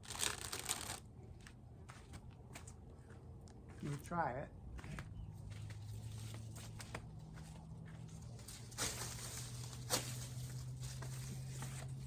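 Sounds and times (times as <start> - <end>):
dry corn plants crackling: 0.0 - 1.0, 8.1 - 12.0.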